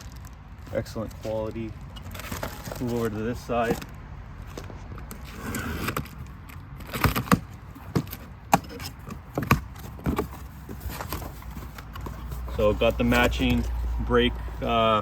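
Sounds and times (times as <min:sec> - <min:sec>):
packaging rustling: 0:00.0 - 0:03.9, 0:04.5 - 0:14.0
boxes knocking and clicking: 0:06.9 - 0:13.8.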